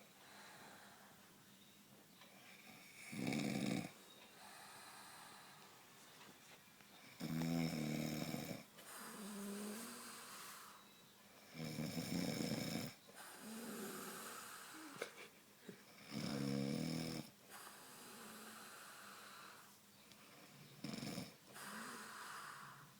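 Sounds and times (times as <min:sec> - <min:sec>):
woman snoring: 0:03.0 - 0:04.0, 0:07.2 - 0:10.8, 0:11.5 - 0:15.2, 0:16.0 - 0:19.7, 0:20.8 - 0:22.9.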